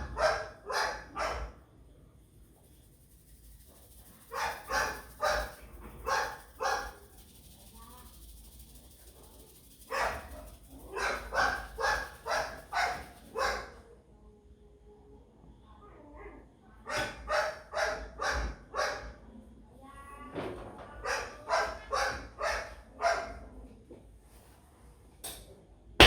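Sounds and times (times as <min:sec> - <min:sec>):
dog barking: 0:00.0 - 0:01.6, 0:04.2 - 0:07.0, 0:09.8 - 0:13.8, 0:16.9 - 0:19.2, 0:21.0 - 0:23.4.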